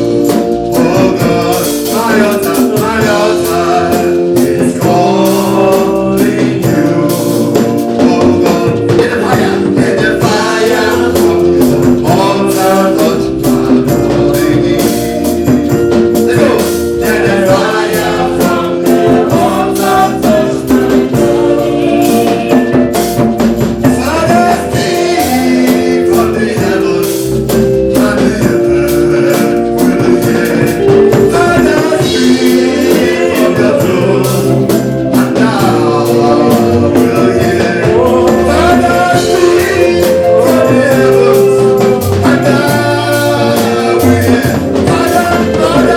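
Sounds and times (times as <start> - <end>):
gospel singing over a beat: 0.0 - 45.9.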